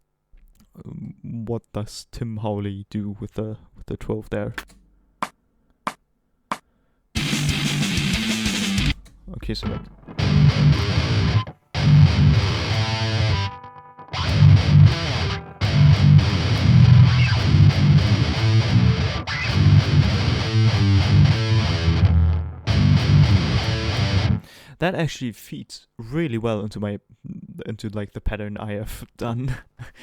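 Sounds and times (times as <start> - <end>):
distorted electric guitar riff: 7.2 - 24.5.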